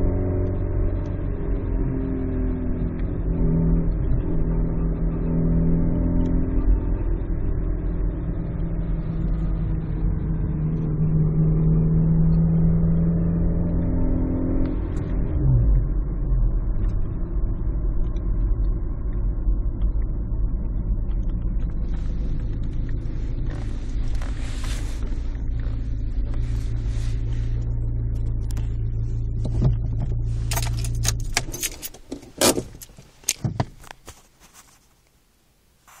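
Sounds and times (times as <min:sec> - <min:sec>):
vehicle engine rumbling: 0:00.0 - 0:36.0
sharp clicks and knocks: 0:29.4 - 0:34.2.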